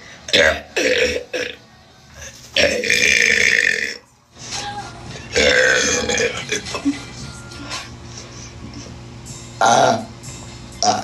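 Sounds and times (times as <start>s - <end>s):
woman burping loudly: 0.3s - 1.6s, 2.6s - 4.0s, 5.3s - 6.8s, 9.6s - 10.1s, 10.8s - 11.0s.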